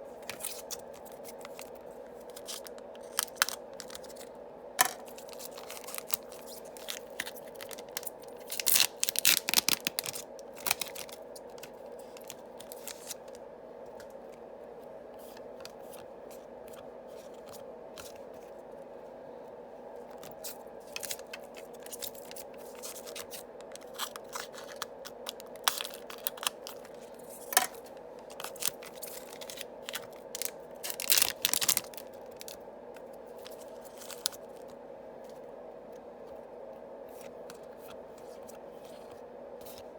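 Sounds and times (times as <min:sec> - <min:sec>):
crinkly packet tearing: 0:02.3 - 0:04.3, 0:04.9 - 0:13.2, 0:20.9 - 0:32.6
cards clicking and scraping: 0:20.2 - 0:31.8.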